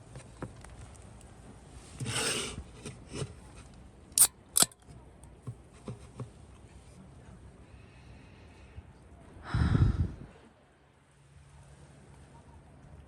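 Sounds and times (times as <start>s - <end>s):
scissors snipping: 4.2s - 4.8s.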